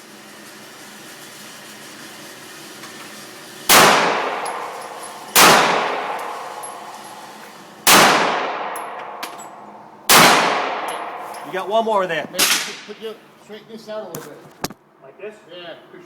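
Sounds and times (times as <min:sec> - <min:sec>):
handgun shots echoing: 0:03.7 - 0:07.2, 0:07.9 - 0:11.4, 0:12.4 - 0:12.9.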